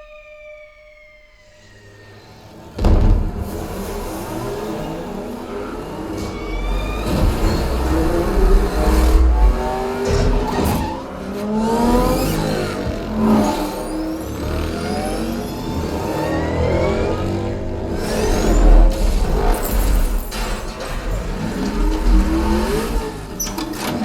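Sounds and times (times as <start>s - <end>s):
racing car engines revving past: 1.8s - 24.0s
deep subwoofer rumble: 7.0s - 11.2s.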